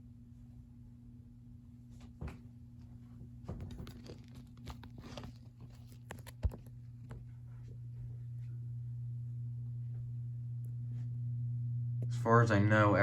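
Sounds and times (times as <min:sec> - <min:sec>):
ceiling fan motor hum: 0:00.0 - 0:13.0
rustling and clicking from handling: 0:02.2 - 0:07.8.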